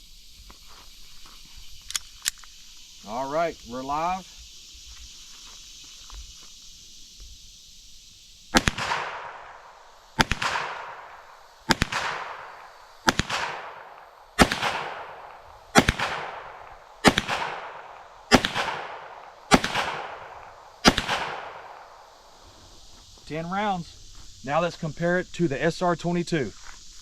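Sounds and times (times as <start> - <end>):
pistol shots echoing: 8.6 - 21.9.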